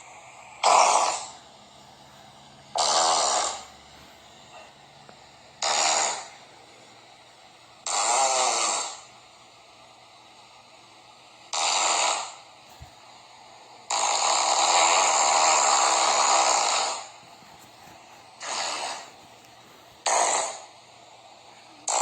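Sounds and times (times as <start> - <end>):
raspy farts: 0.6 - 1.4, 2.8 - 3.7, 5.6 - 6.3, 7.9 - 9.0, 13.9 - 17.2, 18.4 - 19.2, 20.0 - 20.6.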